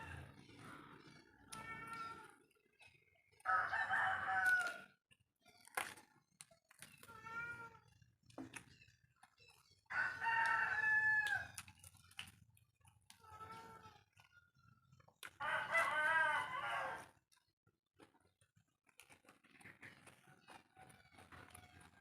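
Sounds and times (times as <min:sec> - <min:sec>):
rooster crowing: 0:03.5 - 0:04.9, 0:09.9 - 0:11.5, 0:15.4 - 0:17.1.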